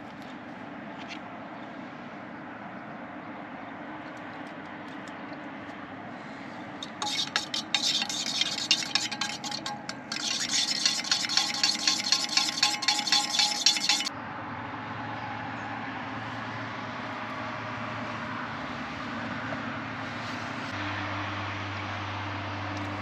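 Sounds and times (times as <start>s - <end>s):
distant traffic hum: 0.0s - 23.0s
utensil scraping in a bowl: 6.8s - 14.1s.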